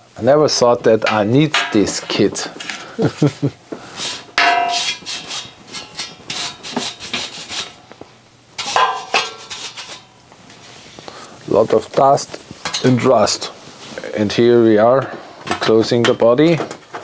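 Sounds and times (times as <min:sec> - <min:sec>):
parts being handled on a table: 0:04.0 - 0:05.2, 0:08.6 - 0:10.0.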